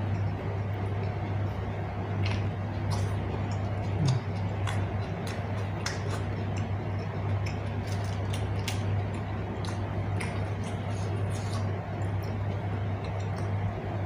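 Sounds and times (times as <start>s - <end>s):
low hum: 0.0s - 14.0s
chewing and lip smacking: 2.2s - 13.6s.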